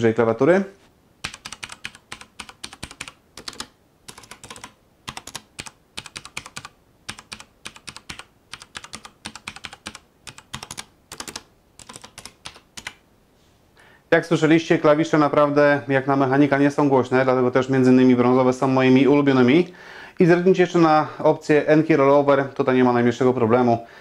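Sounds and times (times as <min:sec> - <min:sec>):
mechanical keyboard typing: 0:01.2 - 0:13.0.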